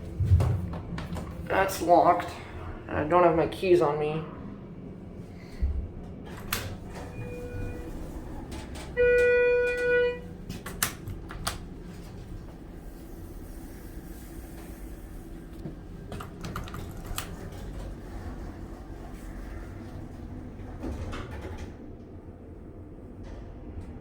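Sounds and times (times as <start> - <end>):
low steady hum: 0.0 - 24.0
elevator chime beep: 6.9 - 8.2, 8.8 - 10.4.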